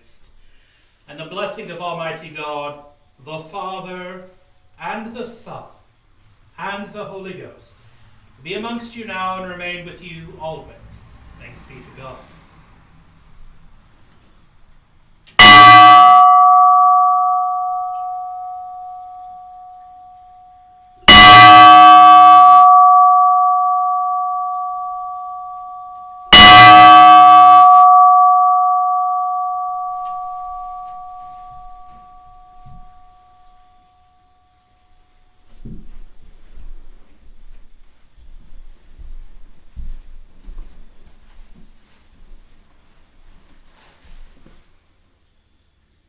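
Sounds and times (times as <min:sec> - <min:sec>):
church bell ringing: 0:15.4 - 0:33.7.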